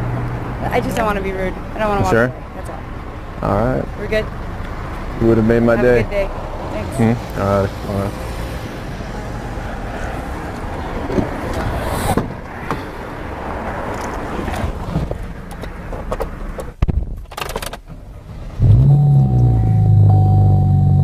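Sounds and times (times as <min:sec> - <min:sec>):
cars passing: 0:00.0 - 0:16.8
music with strong bass line: 0:18.6 - 0:21.0.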